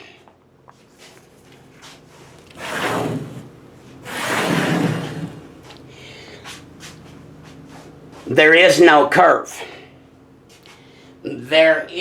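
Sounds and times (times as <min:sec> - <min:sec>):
object sliding: 0:02.5 - 0:05.6.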